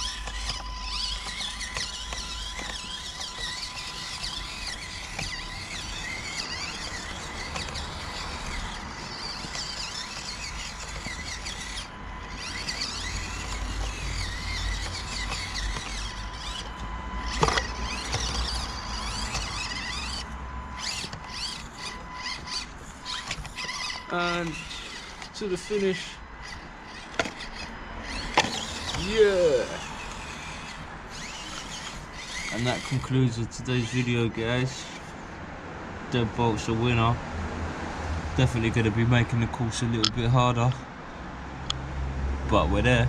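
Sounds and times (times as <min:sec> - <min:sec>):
small electric motor whining: 0:00.0 - 0:35.4.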